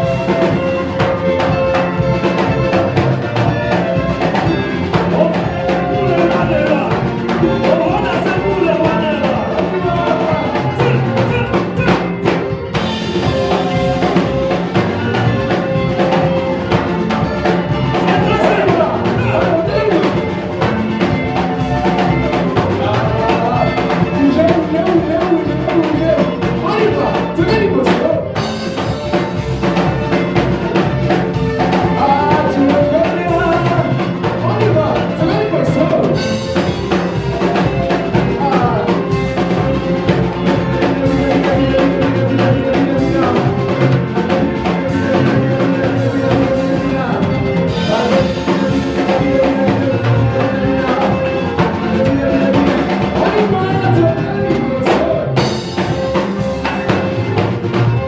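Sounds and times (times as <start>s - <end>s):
drum kit: 0.0s - 58.0s
worship band playing: 0.0s - 58.0s.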